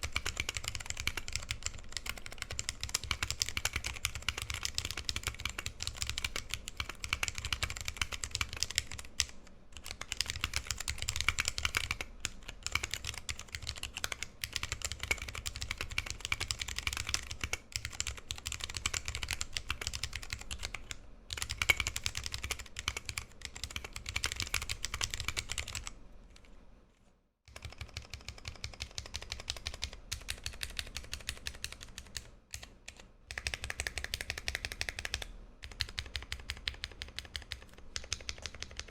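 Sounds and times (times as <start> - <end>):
fast typing on keyboard: 0.0 - 26.0, 27.5 - 38.9.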